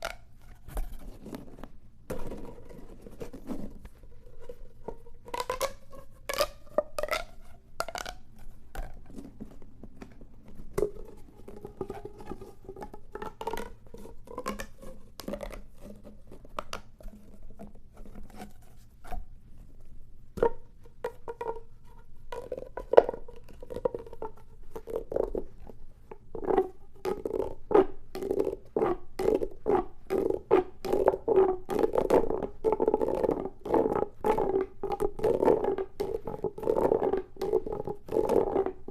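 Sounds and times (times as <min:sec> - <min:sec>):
plastic pop tubes clicking: 0:00.0 - 0:00.3, 0:05.2 - 0:09.0, 0:10.8 - 0:17.0, 0:22.3 - 0:25.4, 0:26.3 - 0:38.9.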